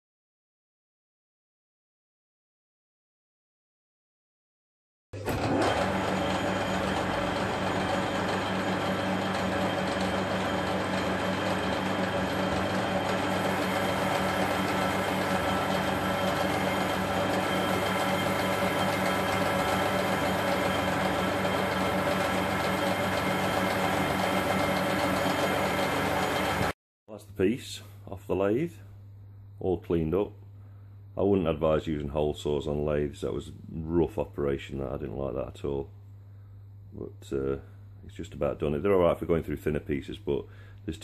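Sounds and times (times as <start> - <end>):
metal lathe humming: 5.2 - 26.8.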